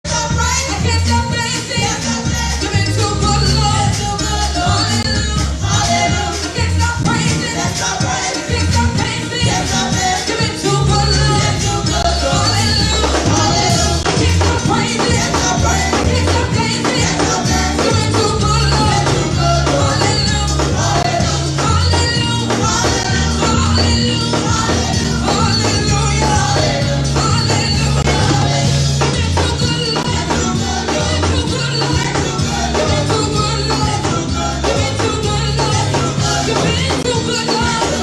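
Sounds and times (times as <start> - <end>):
bass line: 0.0 - 38.0
gospel singing: 0.0 - 38.0.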